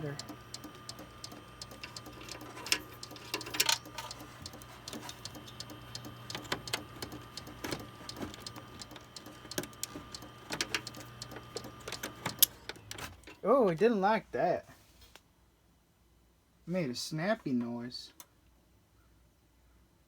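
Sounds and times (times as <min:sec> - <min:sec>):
computer clicking: 0:00.0 - 0:12.6
computer hum: 0:00.0 - 0:12.9.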